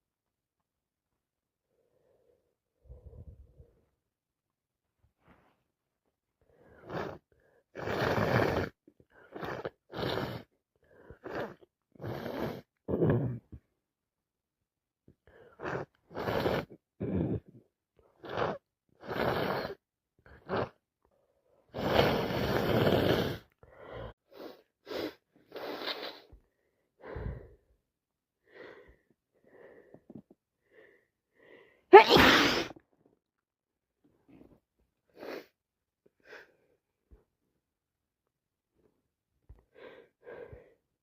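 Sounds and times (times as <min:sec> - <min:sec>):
person sneezing: 0:31.9 - 0:32.8.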